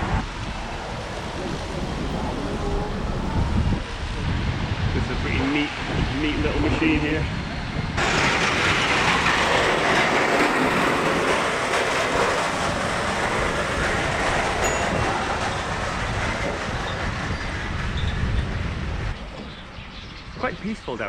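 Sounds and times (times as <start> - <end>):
machine hissing and rattling: 8.0 - 19.4.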